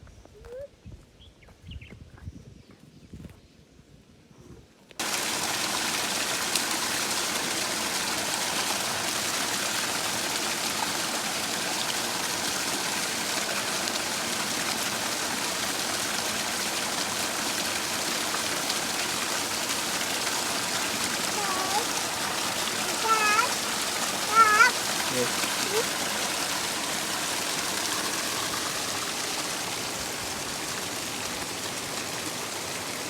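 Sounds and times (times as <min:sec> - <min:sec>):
river water over rocks: 0:05.0 - 0:33.0.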